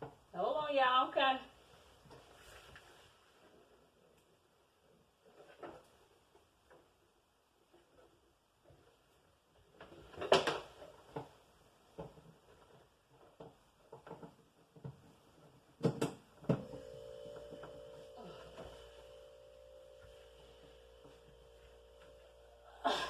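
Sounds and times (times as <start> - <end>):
wine cooler humming: 16.5 - 23.0.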